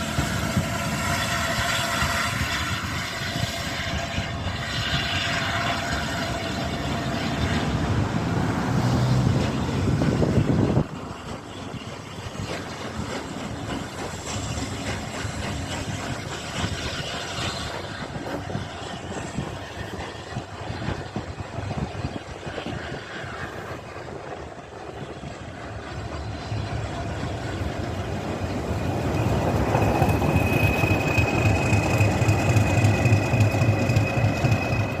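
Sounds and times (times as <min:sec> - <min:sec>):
steam train running on track: 0:00.0 - 0:35.0
thin high squeal: 0:28.3 - 0:35.0.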